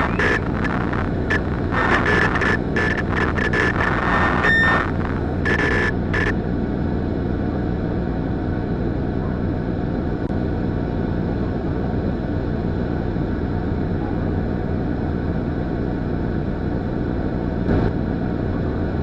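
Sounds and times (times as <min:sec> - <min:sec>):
short electronic tone bursts: 0:00.0 - 0:06.4
steady low-pitched noise: 0:00.0 - 0:11.3.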